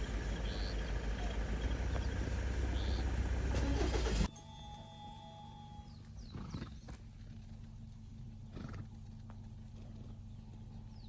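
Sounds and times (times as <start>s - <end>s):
bird chirps: 0.0s - 3.5s, 4.3s - 7.0s
steady low hum: 0.0s - 11.0s.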